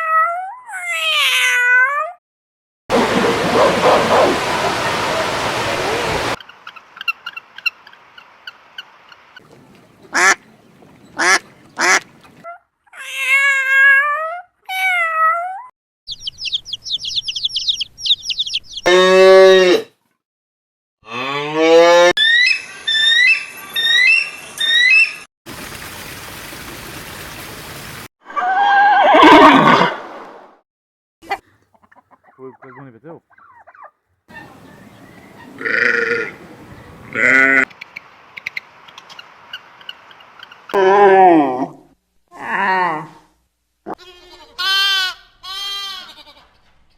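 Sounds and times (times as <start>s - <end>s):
loud harsh animal call: 34.3s - 36.4s
falling honking calls: 34.3s - 37.7s.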